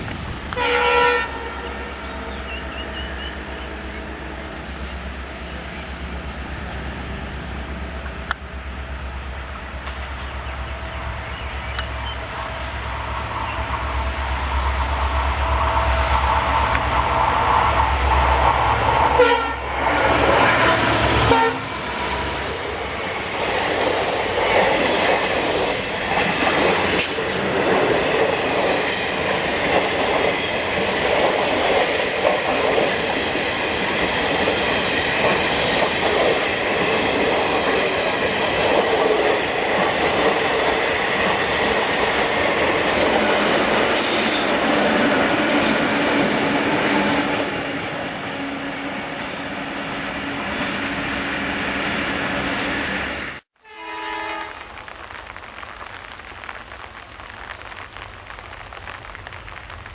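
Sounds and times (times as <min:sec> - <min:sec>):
train horn blast: 0:00.5 - 0:04.6, 0:19.1 - 0:22.6, 0:53.6 - 0:54.8
train wheels clattering on rails: 0:09.4 - 0:10.6, 0:20.0 - 0:48.1.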